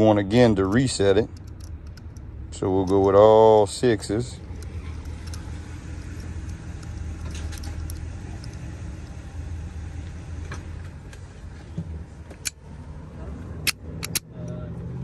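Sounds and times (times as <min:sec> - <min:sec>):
steady low hum: 0:00.0 - 0:15.0
combination lock dials clicking: 0:00.6 - 0:03.3, 0:04.4 - 0:09.2, 0:13.6 - 0:14.6.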